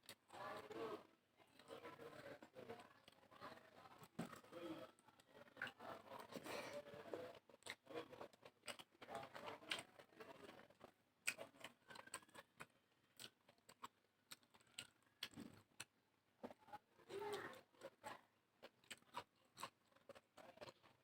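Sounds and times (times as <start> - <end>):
wet mouth clicks and chewing: 7.5 - 10.0, 11.2 - 16.0, 18.6 - 21.0.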